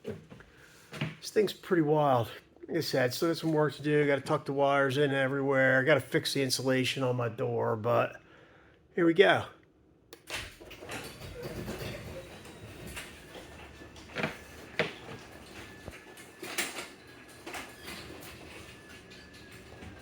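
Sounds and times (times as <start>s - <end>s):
garage door motor hum: 10.2s - 20.0s
garage door opener click: 10.2s - 20.0s
garage door knocks and clacks: 10.3s - 16.1s.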